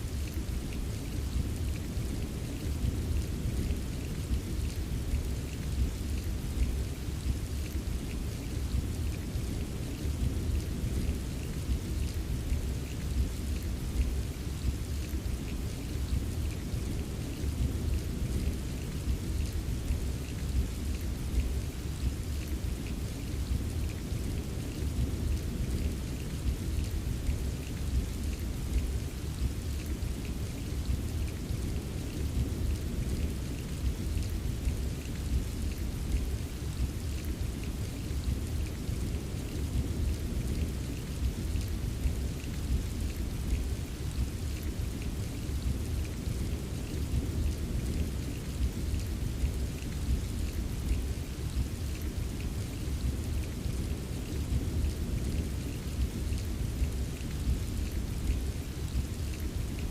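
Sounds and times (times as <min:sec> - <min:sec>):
rain drops tapping: 0:00.1 - 0:59.9.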